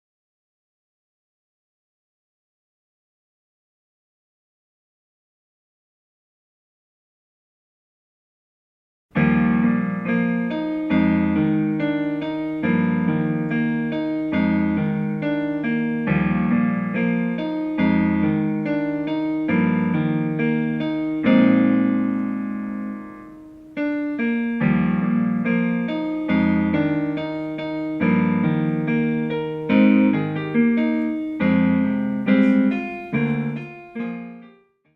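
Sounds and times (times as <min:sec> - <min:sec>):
piano melody with chords: 0:09.1 - 0:34.9.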